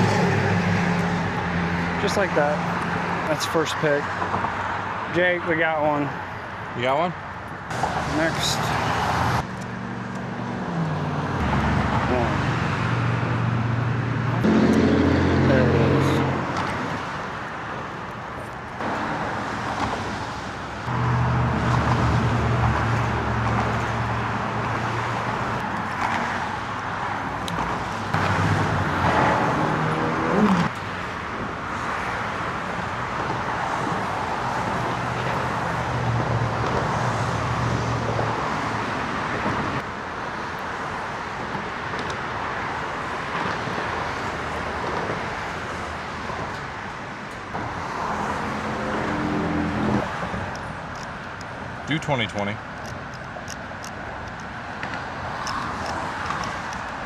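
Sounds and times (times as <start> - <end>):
road traffic passing: 0.0 - 57.0
heavy vehicle humming: 7.4 - 19.0.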